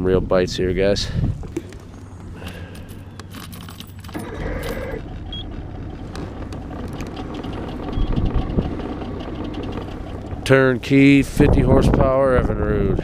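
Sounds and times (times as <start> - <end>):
outboard motor running: 1.4 - 13.0
light metallic jingling: 1.5 - 5.0.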